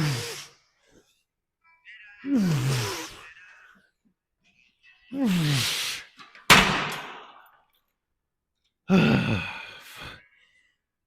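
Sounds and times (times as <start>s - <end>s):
man sighing: 8.9s - 10.2s.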